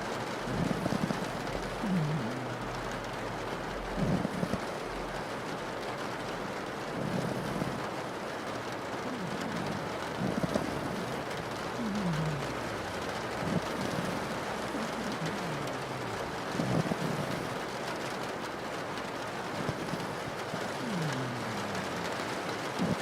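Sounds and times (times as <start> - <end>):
rain on a window: 0.0 - 23.0
dog snoring: 0.5 - 3.0, 3.9 - 4.8, 6.9 - 8.0, 9.0 - 18.2, 19.4 - 23.0.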